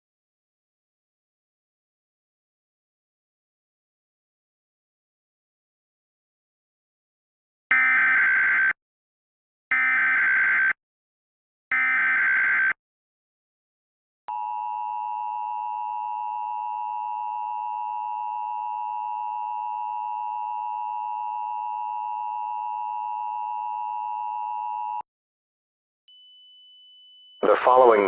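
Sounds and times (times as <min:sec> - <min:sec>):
two-tone alarm tone: 0:07.7 - 0:08.8, 0:09.7 - 0:10.8, 0:11.7 - 0:12.8, 0:14.3 - 0:25.0, 0:26.1 - 0:28.0.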